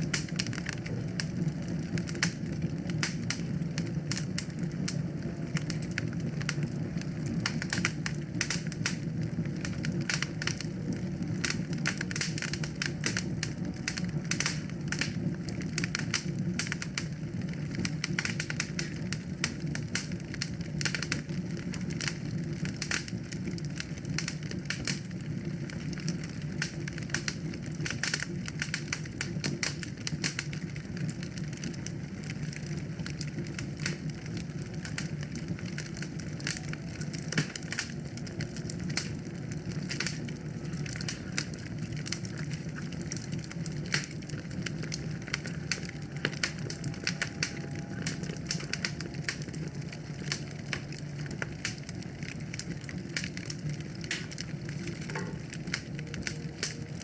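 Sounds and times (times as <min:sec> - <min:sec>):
low rumble of burning fire: 0:00.0 - 0:57.0
wood fire crackling: 0:00.0 - 0:57.0.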